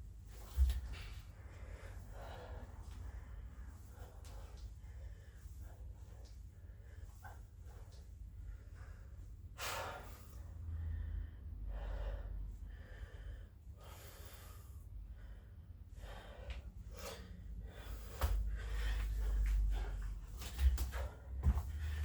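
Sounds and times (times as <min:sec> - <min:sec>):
man breathing hard: 0:00.6 - 0:22.0.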